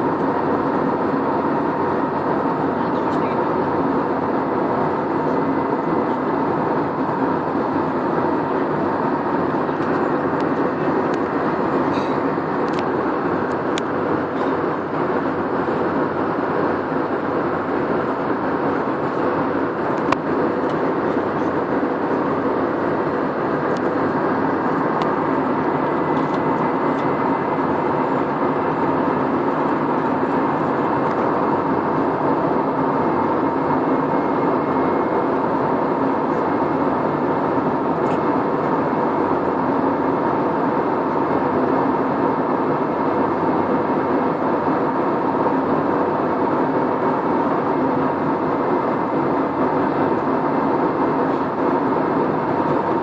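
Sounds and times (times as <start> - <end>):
airliner cabin engine rush: 0.0 - 53.0.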